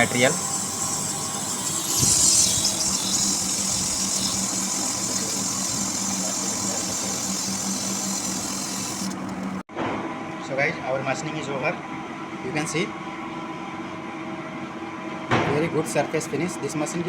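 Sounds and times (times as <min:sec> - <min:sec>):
machine high hiss: 0:00.0 - 0:09.6
machine low hum: 0:00.0 - 0:09.6.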